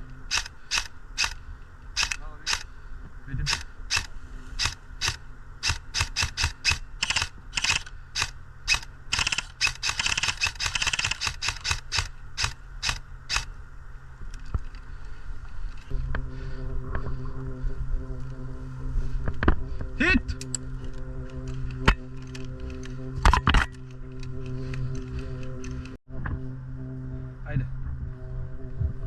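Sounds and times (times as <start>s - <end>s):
steady low hum: 0.0s - 29.0s
airsoft guns firing: 3.5s - 13.5s.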